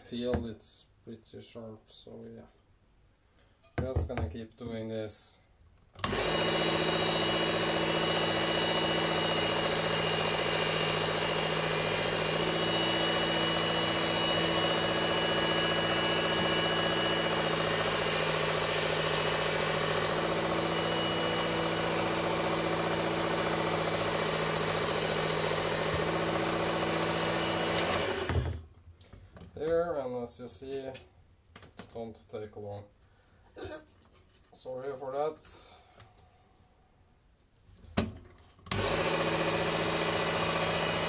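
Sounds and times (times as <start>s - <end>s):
belt sharpener motor hum: 6.0s - 28.5s, 38.7s - 41.0s.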